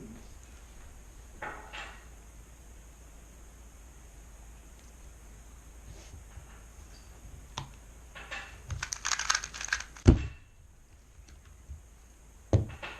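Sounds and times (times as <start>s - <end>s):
plastic puzzle cube clicking: 8.7s - 10.1s.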